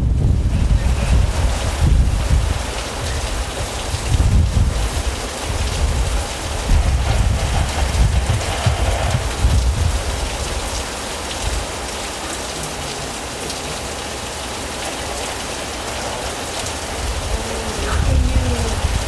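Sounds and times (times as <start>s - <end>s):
rain falling: 0.0s - 19.0s
rain drop taps: 5.5s - 12.0s.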